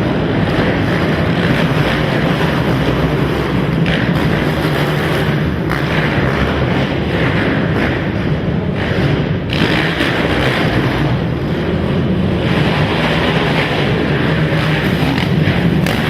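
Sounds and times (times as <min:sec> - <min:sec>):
racing quad engines: 0:00.0 - 0:16.0.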